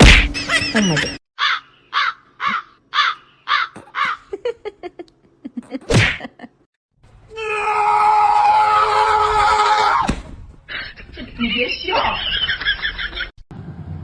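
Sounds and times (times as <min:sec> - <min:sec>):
crow cawing: 0:01.4 - 0:04.3.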